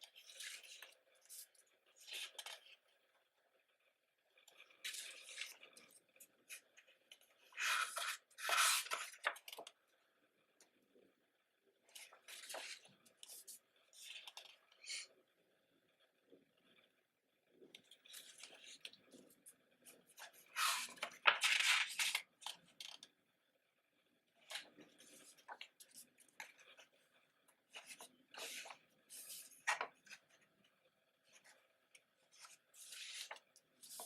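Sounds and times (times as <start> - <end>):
paper pages turning and rustling: 0.1 - 2.8, 4.6 - 6.7, 7.5 - 9.7, 11.9 - 15.1, 18.0 - 23.0, 24.4 - 26.9, 27.7 - 30.4, 32.2 - 34.0.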